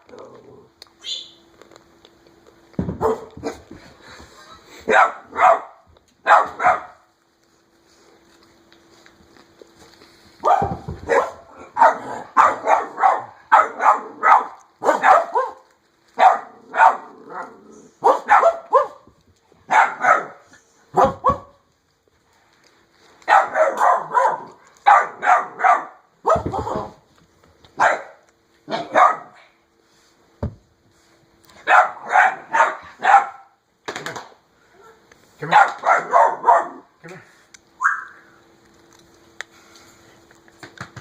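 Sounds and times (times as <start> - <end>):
dog barking: 3.0 - 3.6, 4.9 - 7.0, 10.4 - 15.6, 16.2 - 17.2, 18.0 - 19.0, 19.7 - 21.5, 23.3 - 26.9, 27.8 - 29.4, 31.6 - 33.6, 34.8 - 36.9.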